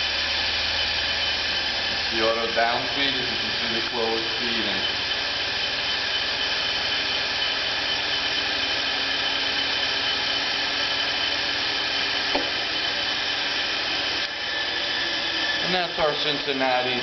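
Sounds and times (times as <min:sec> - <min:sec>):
milling machine motor and gear whine: 0:00.0 - 0:17.0.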